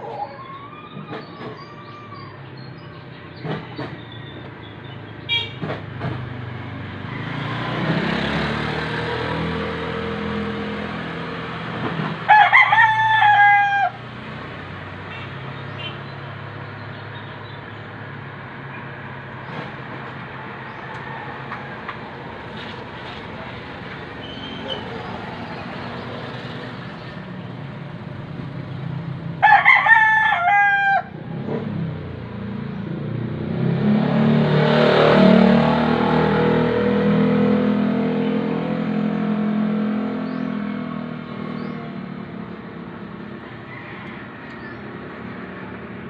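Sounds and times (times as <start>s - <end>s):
vehicle passing: 1.1s - 46.0s
rooster crowing: 7.0s - 7.8s, 12.3s - 14.0s, 20.3s - 22.3s, 29.4s - 31.2s, 43.2s - 45.7s.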